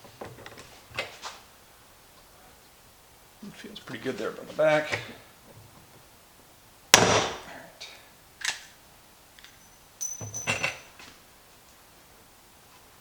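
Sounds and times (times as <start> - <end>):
short metallic rattle: 9.5 - 11.0.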